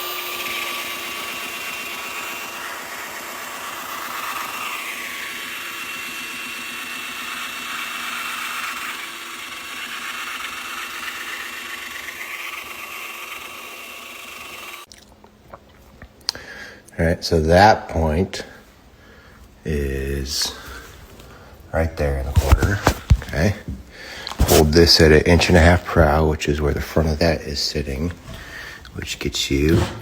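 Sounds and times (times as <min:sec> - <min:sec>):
electric power tool motor running: 0:00.0 - 0:14.9.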